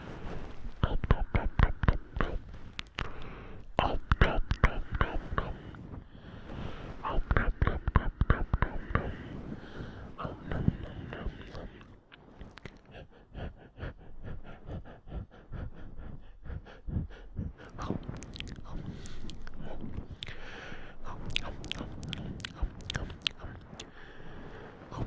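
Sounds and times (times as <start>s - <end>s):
breathy rush: 0.0s - 25.0s
wet mouth nibbling and clicking: 1.0s - 5.2s, 11.1s - 12.9s, 17.6s - 20.4s, 21.0s - 24.0s.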